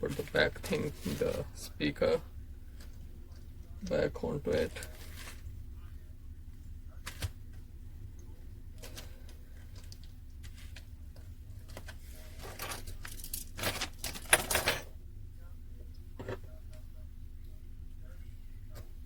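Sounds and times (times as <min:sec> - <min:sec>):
steady low hum: 0:00.0 - 0:19.0
handling clicks and rustles: 0:08.2 - 0:15.0.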